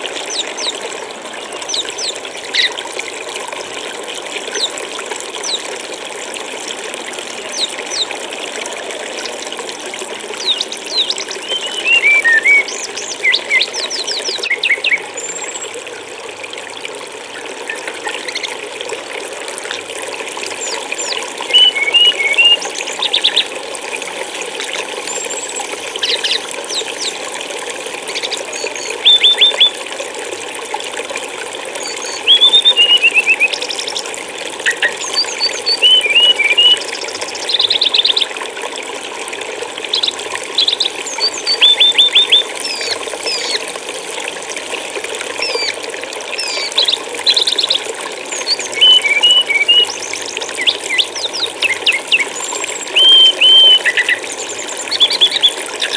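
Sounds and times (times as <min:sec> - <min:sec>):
stream water flowing: 0:00.0 - 0:55.9
songbird chirping: 0:10.4 - 0:15.0, 0:48.4 - 0:54.2.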